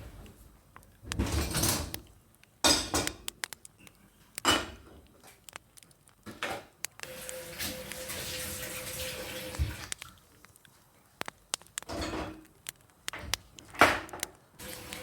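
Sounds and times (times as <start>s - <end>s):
kitchen tap running water: 7.0s - 10.3s, 14.6s - 15.0s.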